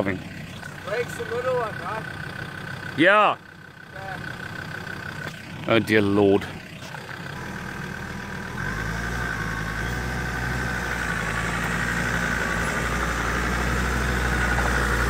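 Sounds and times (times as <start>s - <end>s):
vehicle engine driving off: 0.0s - 15.0s.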